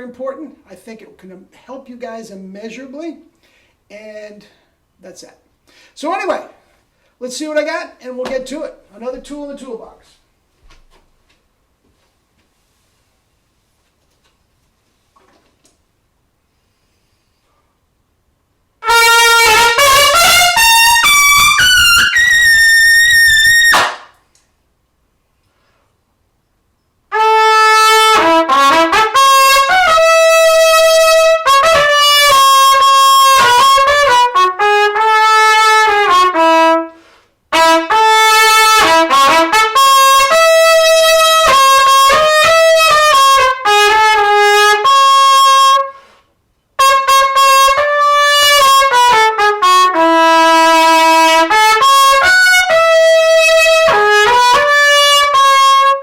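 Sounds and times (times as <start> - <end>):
solo trumpet playing: 18.8 - 24.1, 27.1 - 46.1, 46.8 - 56.0.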